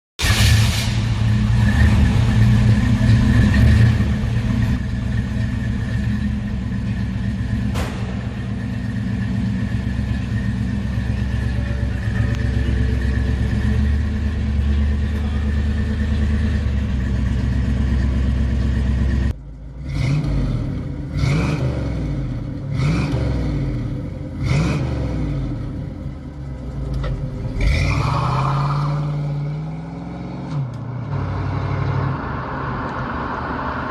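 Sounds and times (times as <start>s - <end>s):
car engine idling: 0.2s - 21.4s, 23.5s - 27.8s
car engine revving: 0.2s - 33.9s.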